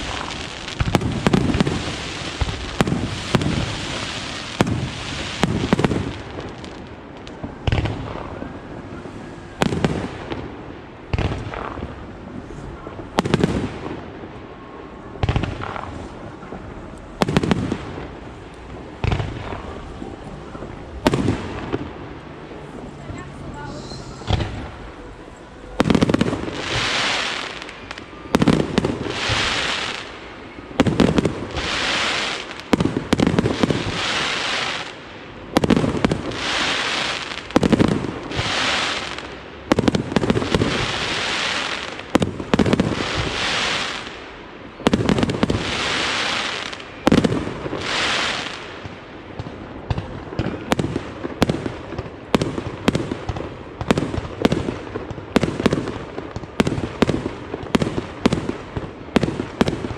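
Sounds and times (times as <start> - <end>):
firework hissing: 0.0 - 6.9, 22.6 - 48.8.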